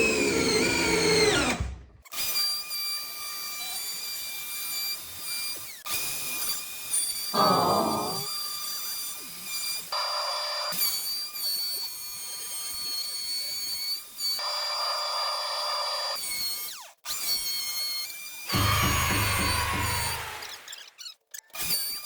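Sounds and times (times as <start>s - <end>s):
router bit cutting wood: 7.4s - 8.3s, 18.5s - 20.7s
wood router whining: 7.4s - 8.3s, 18.5s - 20.8s.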